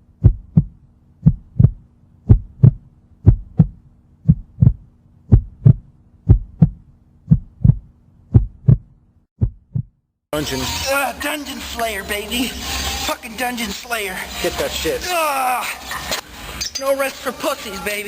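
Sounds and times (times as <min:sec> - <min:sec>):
heartbeat thumps: 0:00.0 - 0:10.0.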